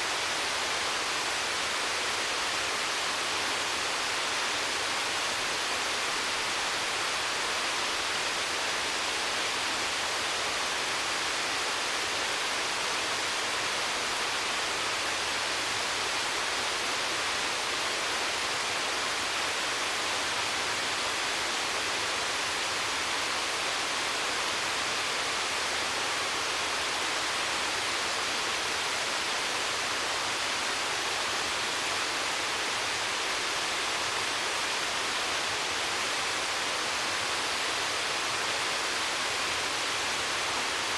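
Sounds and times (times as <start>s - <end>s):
waterfall rushing: 0.0s - 40.9s.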